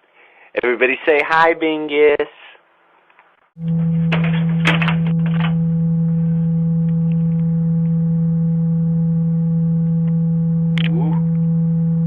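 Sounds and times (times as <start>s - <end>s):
loud electrical hum: 3.6s - 12.0s.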